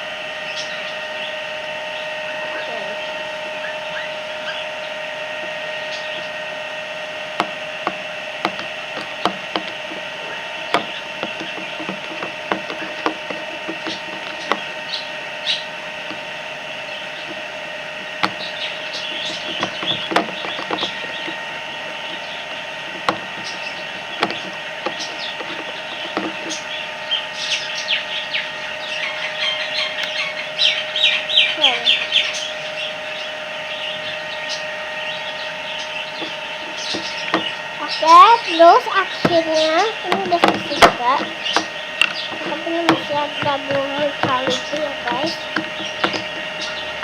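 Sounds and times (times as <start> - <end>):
steady background hum: 0.0 - 47.0
utensil knocking against container: 7.4 - 10.0, 10.6 - 14.8, 18.1 - 22.2, 22.9 - 26.6, 39.2 - 47.0.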